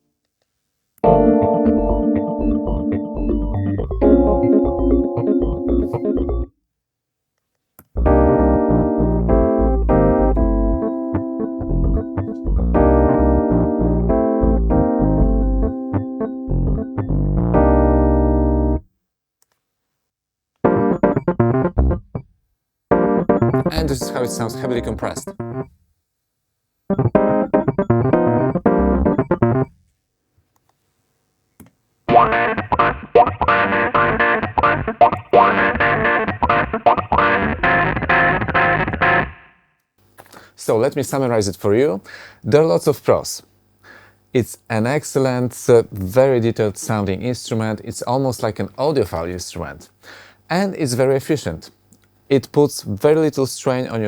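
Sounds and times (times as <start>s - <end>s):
electric piano chords: 1.0s - 6.5s, 8.0s - 18.8s, 20.6s - 22.2s, 22.9s - 25.7s, 26.9s - 29.7s, 32.1s - 39.3s.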